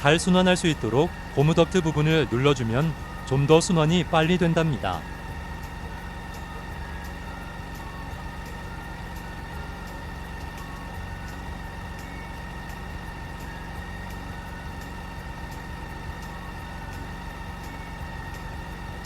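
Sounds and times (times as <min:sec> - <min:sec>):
faint high whining tones: 0:00.0 - 0:19.0
low machine hum: 0:00.0 - 0:19.0.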